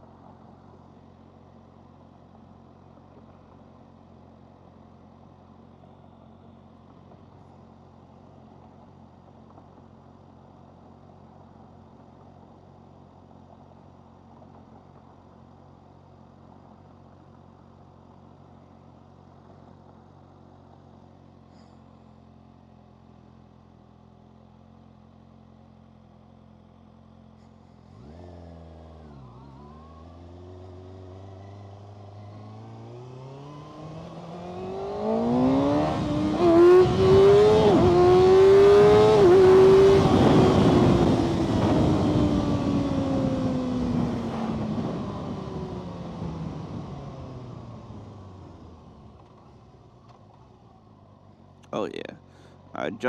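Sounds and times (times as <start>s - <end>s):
motorcycle engine revving: 27.9s - 44.6s.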